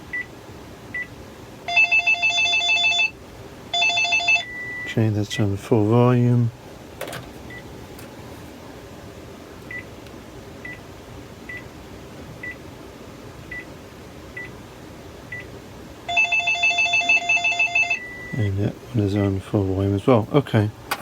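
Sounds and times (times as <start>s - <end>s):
warbling phone ringer: 1.7s - 4.9s, 16.1s - 18.5s.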